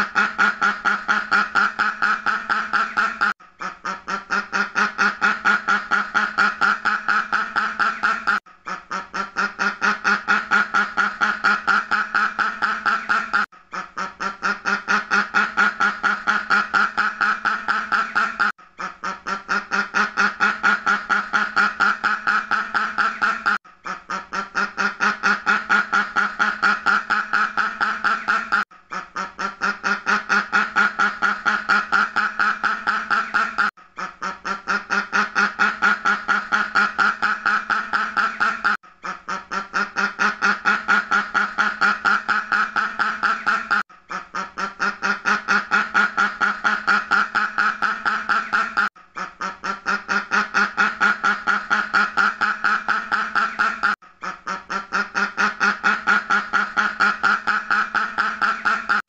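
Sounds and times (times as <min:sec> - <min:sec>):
duck quacking: 0:00.0 - 0:59.0.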